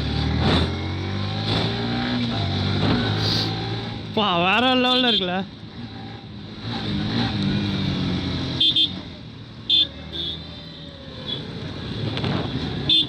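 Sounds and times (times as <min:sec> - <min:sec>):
horn beeps: 0:04.8 - 0:05.4, 0:08.5 - 0:09.0, 0:09.6 - 0:10.5.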